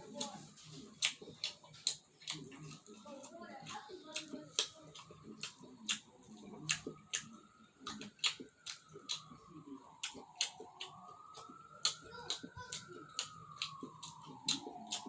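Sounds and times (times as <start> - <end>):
mouth chewing smacks: 0.1 - 15.0.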